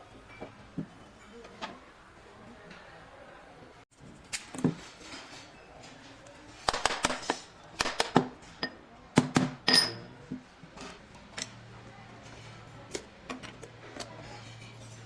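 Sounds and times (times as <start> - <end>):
kitchen utensils clinking: 4.1 - 8.9, 9.6 - 11.6, 12.2 - 15.0.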